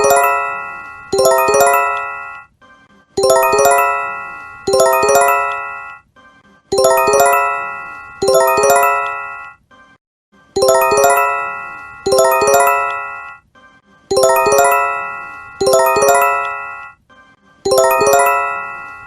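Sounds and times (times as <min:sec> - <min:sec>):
bell-like alert chime: 0:00.0 - 0:02.4, 0:03.2 - 0:06.0, 0:06.7 - 0:09.6, 0:10.6 - 0:13.4, 0:14.1 - 0:17.0, 0:17.7 - 0:19.0.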